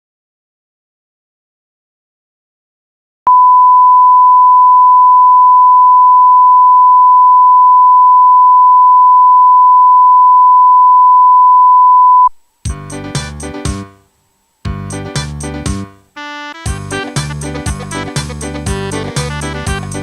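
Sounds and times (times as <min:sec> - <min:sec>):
pure electronic beep: 0:03.3 - 0:12.3.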